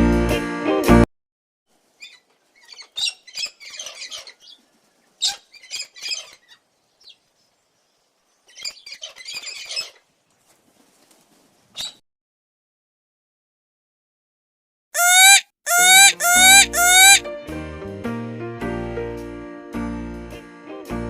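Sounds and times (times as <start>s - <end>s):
bird chattering: 15.0s - 17.2s.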